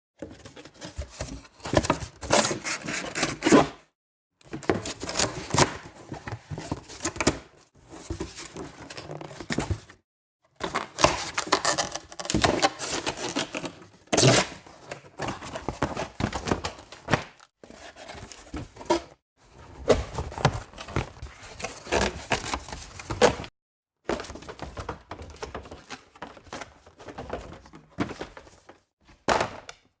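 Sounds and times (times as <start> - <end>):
cardboard tearing: 10.7 - 14.7.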